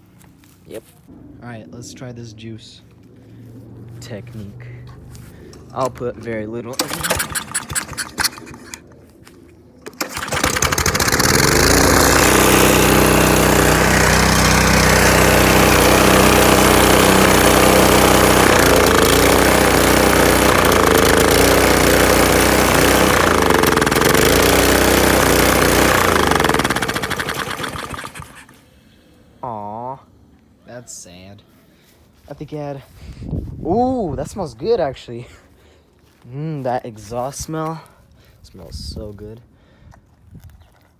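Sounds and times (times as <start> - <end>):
small engine running and surging: 6.8 - 8.9, 9.8 - 28.6.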